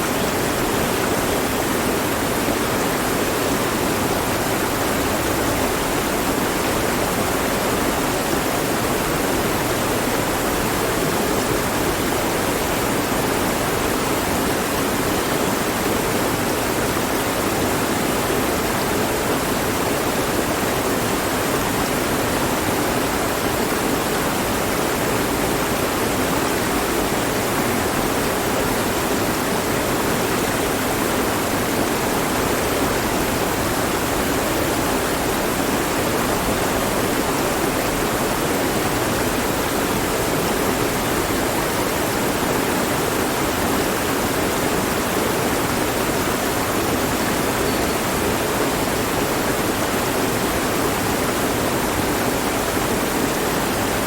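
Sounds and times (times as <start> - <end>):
stream flowing over rocks: 0.0 - 54.0.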